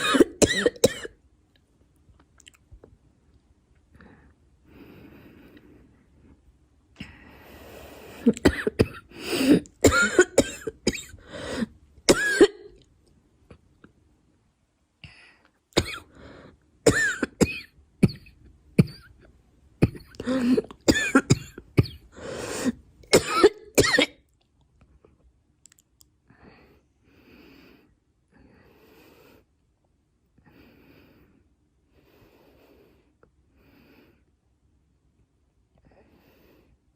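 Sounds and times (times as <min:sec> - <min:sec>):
girl coughing: 0:00.0 - 0:01.2, 0:08.2 - 0:11.2, 0:12.1 - 0:12.7, 0:15.8 - 0:16.1, 0:16.9 - 0:19.1, 0:19.8 - 0:24.2
faint breaths: 0:03.9 - 0:08.3, 0:11.2 - 0:11.8, 0:15.0 - 0:16.7, 0:22.1 - 0:22.9, 0:26.2 - 0:29.6, 0:30.4 - 0:34.4, 0:35.8 - 0:36.9.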